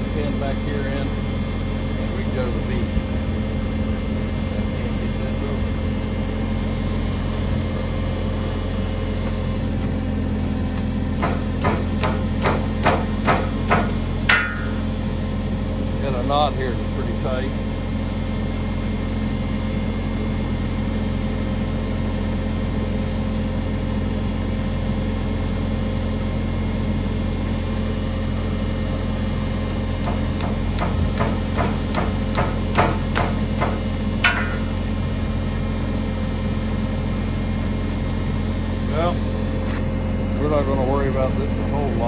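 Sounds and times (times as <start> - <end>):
low machine hum: 0.0 - 42.0
sharp knocks: 11.2 - 14.9, 30.0 - 34.8.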